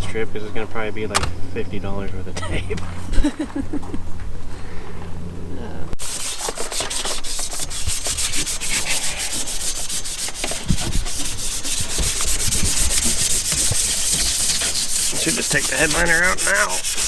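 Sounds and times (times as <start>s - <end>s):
low hum: 0.0s - 6.0s
hand sanding strokes: 6.0s - 17.0s.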